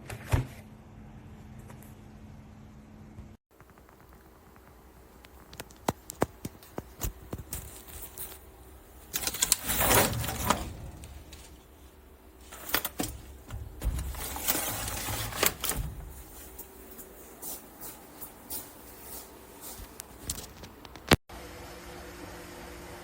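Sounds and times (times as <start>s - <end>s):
sharp clicks and taps: 3.6s - 7.7s
rustling: 3.6s - 21.2s.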